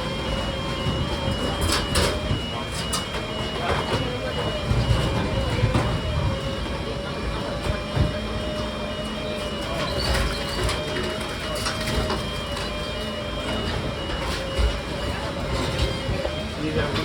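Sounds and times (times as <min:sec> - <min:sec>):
heavy machinery whine: 0:00.0 - 0:17.0.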